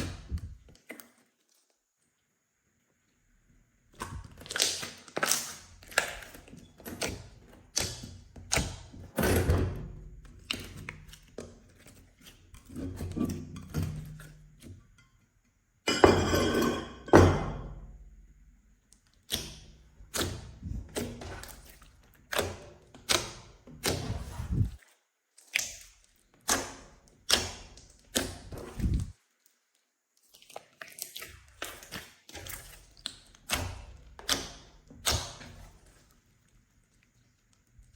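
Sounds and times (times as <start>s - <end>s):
crackling squelch of slime: 3.8s - 9.0s, 18.8s - 37.9s
slime squishing and slapping: 4.0s - 9.2s, 19.2s - 24.8s, 25.4s - 29.1s, 30.2s - 36.0s.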